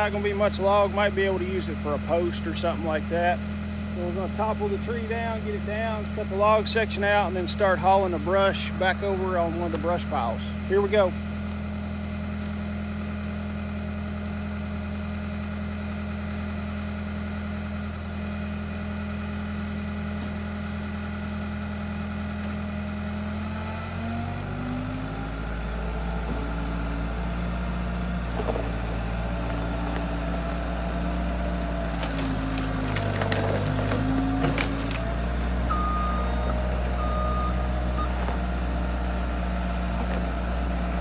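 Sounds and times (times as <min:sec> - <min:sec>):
skid loader engine running: 0:00.0 - 0:41.0
wood cracking and snapping: 0:28.3 - 0:37.0.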